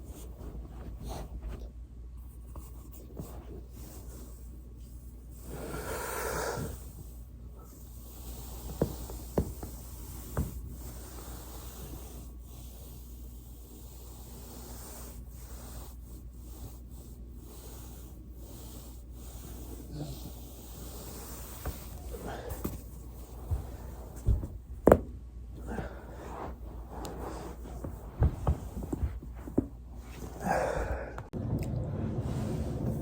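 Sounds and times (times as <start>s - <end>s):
low hum: 23.0s - 33.0s.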